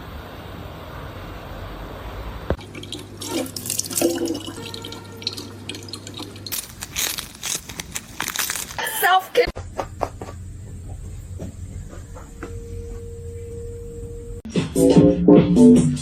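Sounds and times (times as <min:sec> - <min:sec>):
tap water running into sink: 0:02.6 - 0:06.6.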